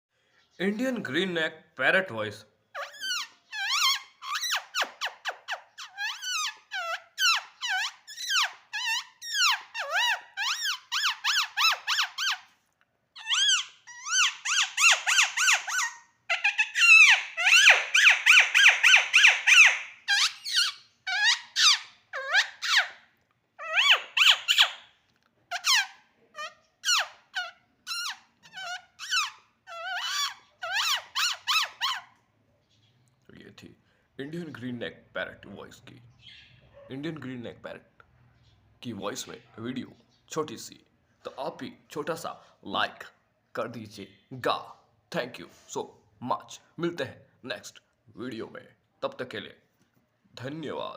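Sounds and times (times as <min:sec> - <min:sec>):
parakeet squawking: 0:02.7 - 0:12.5, 0:13.2 - 0:23.0, 0:23.6 - 0:24.8, 0:25.5 - 0:32.2.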